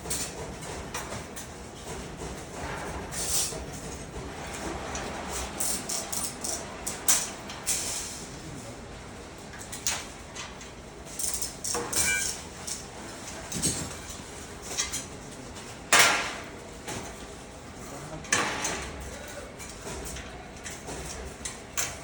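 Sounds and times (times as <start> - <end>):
metal parts knocking and clinking: 11.2 - 12.8.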